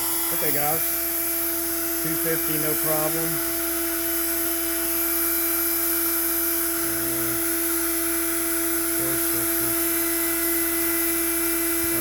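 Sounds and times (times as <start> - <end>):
router spinning whine: 0.0 - 12.0.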